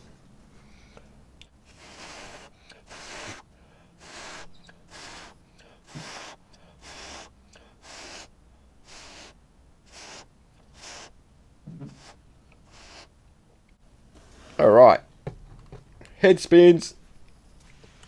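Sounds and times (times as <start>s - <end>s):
person blowing short puffs: 0.6s - 13.2s.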